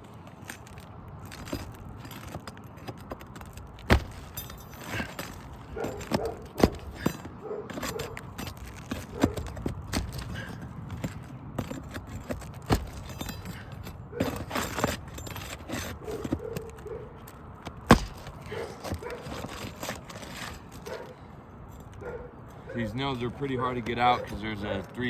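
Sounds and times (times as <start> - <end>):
nails scraping under shingles: 0.0 - 25.0.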